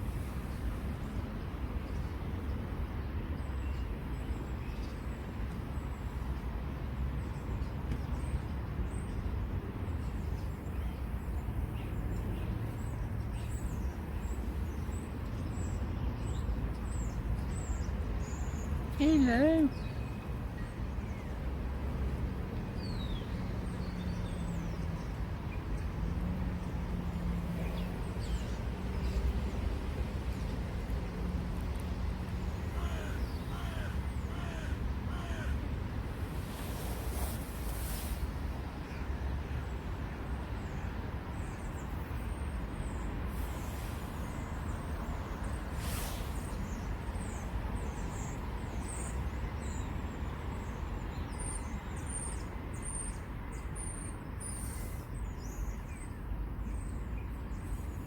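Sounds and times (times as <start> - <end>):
bird calling: 32.6 - 35.7.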